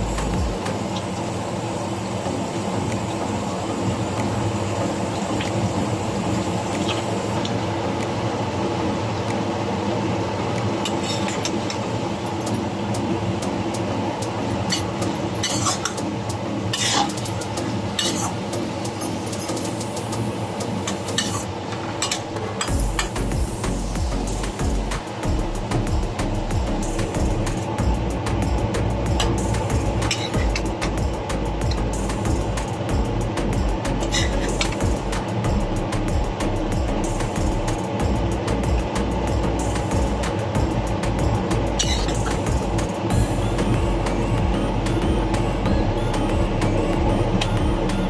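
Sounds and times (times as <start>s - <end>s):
food sizzling hiss: 0.0s - 27.8s.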